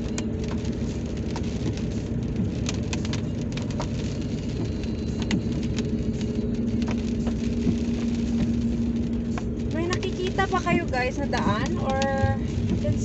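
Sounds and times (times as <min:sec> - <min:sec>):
car engine and road noise: 0:00.0 - 0:13.0
raindrops ticking on car: 0:00.0 - 0:13.0.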